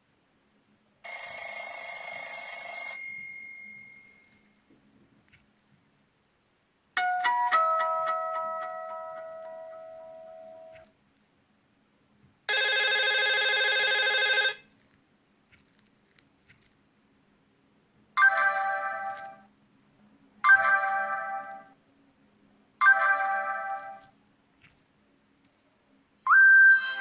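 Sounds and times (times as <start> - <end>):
chiming ringtone: 1.0 - 4.5, 7.0 - 10.8, 18.2 - 19.4, 20.4 - 21.7, 22.8 - 24.1, 26.3 - 27.0
buzzy electronic ringtone: 22.8 - 24.0, 26.3 - 27.0.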